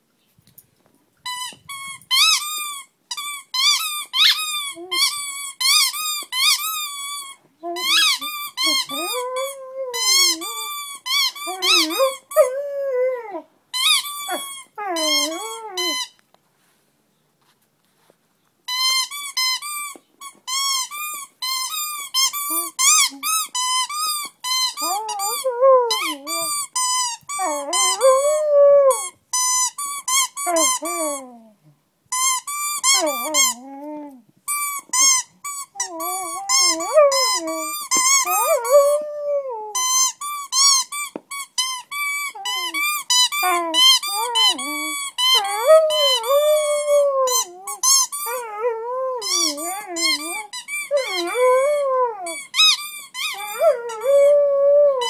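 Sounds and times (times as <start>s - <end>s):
squeaky toy squeaking: 1.2s - 16.2s, 18.7s - 31.4s, 32.1s - 33.8s, 34.5s - 54.3s.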